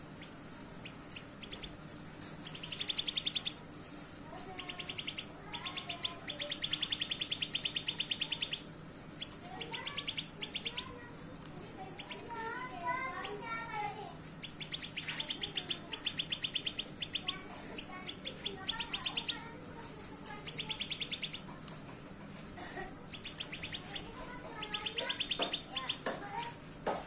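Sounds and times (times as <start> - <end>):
bird chattering trills: 0.0 - 3.7, 4.4 - 11.0, 11.8 - 12.4, 14.3 - 19.6, 20.3 - 21.6, 23.0 - 26.2.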